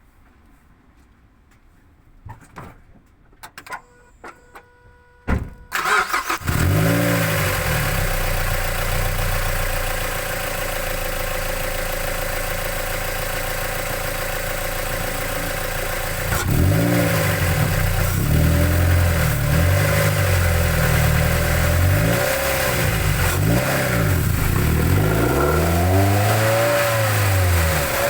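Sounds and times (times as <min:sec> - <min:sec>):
car engine starting and idling: 0:05.6 - 0:28.0.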